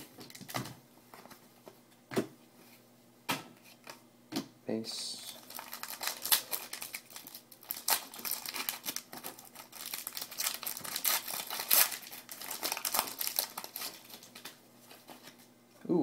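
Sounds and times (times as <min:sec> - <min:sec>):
foil wrappers ripping open: 0:05.2 - 0:15.4
foil wrappers crinkling: 0:05.2 - 0:15.5.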